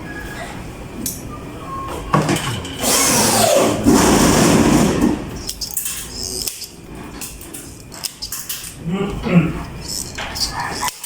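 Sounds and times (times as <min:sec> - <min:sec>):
small motor whirring: 0:02.8 - 0:04.6.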